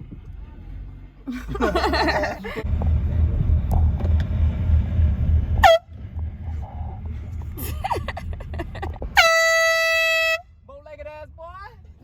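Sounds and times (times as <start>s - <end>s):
car driving rumble: 0.0s - 12.0s
road and wind noise: 0.0s - 12.0s
air horn blast: 5.6s - 6.0s, 9.2s - 10.5s.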